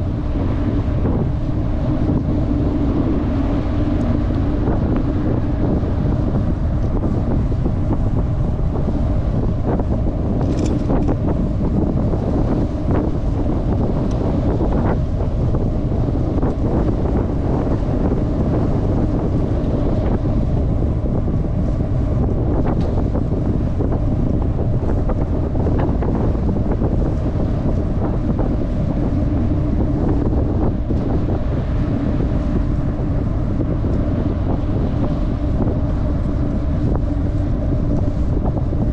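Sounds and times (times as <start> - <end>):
wind buffeting microphone: 0.0 - 38.9.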